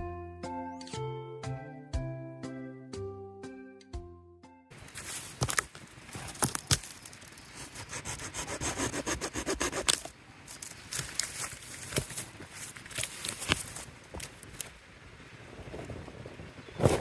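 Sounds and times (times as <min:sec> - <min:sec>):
wood cracking and knocking: 0:05.4 - 0:07.3
hand saw cutting wood: 0:07.5 - 0:10.1.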